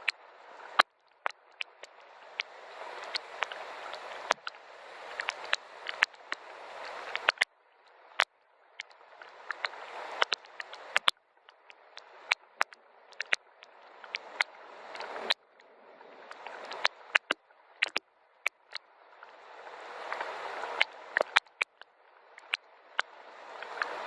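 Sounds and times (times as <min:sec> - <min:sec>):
drips tapping on a surface: 0:05.2 - 0:06.4, 0:08.2 - 0:14.5, 0:16.3 - 0:18.8, 0:20.8 - 0:24.0.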